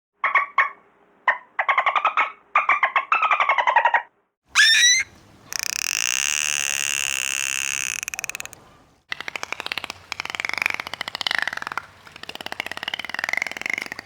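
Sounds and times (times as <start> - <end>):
dolphin wavering whistle: 4.6 - 8.7, 10.2 - 14.0
dolphin clicks: 4.6 - 14.0
dolphin pulsed buzz: 4.6 - 14.0.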